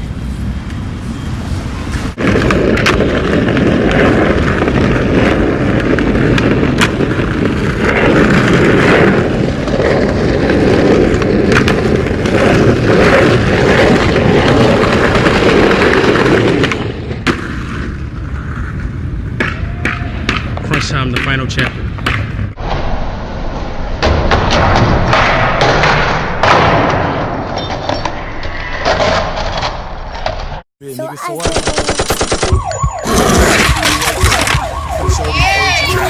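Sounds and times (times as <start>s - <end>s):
skateboard wheels rolling on pavement: 0.0s - 20.7s
skateboard clacks: 11.0s - 17.4s.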